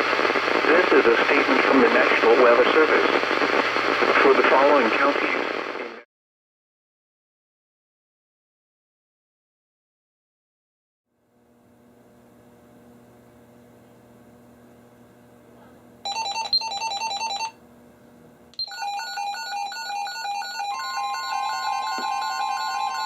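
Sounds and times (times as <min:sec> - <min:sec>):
radio static hiss and hum: 0:00.0 - 0:06.1
steady alarm tone: 0:18.6 - 0:23.0
warbling electronic alert beeps: 0:18.6 - 0:23.0.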